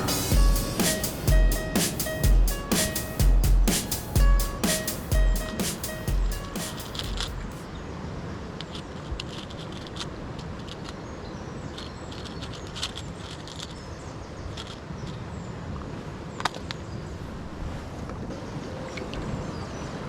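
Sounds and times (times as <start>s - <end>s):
sea surf: 0.0s - 8.6s.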